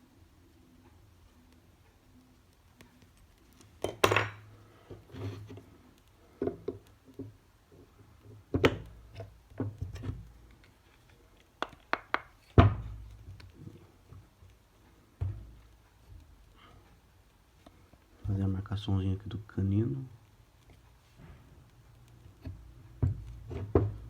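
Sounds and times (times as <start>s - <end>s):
hand tools knocking on hard surfaces: 11.6s - 12.8s.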